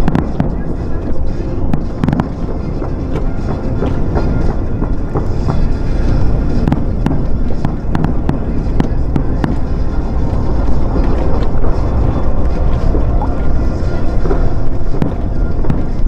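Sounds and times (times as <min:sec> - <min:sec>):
fireworks bangs and crackles: 0:00.0 - 0:00.9, 0:01.7 - 0:05.6, 0:06.6 - 0:11.7, 0:14.1 - 0:16.0
steady low rumble: 0:00.0 - 0:16.0.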